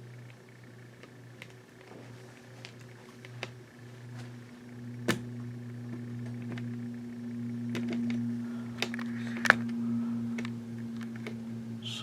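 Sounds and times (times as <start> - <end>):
low electrical hum: 0.0 - 12.0.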